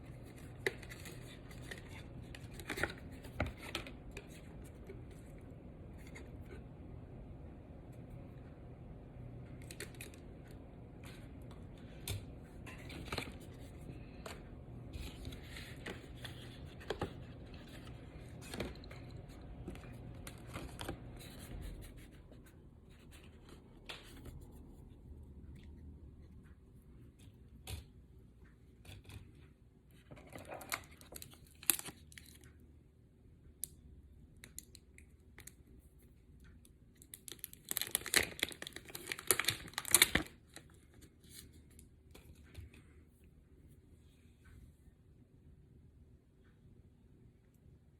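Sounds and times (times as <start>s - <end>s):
cardboard and plastic rustling: 0.0s - 6.6s, 9.5s - 24.5s, 37.3s - 42.8s
low steady hum: 0.0s - 47.9s.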